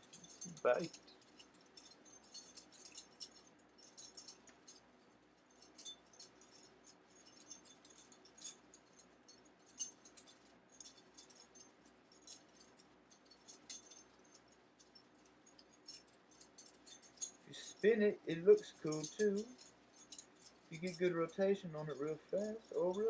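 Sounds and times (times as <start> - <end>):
butterfly knife clicking and jingling: 0.0 - 4.8, 15.5 - 23.0.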